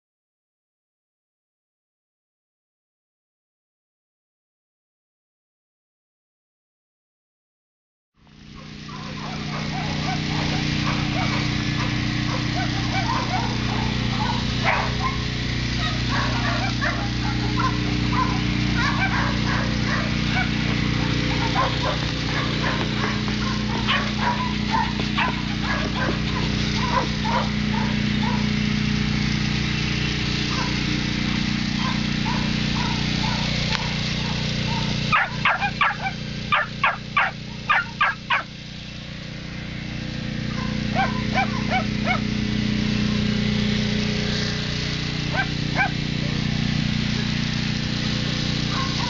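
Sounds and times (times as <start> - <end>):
steady low hum: 8.2 - 49.0
distant dogs barking and yipping: 8.5 - 29.0, 29.6 - 38.6, 40.2 - 49.0.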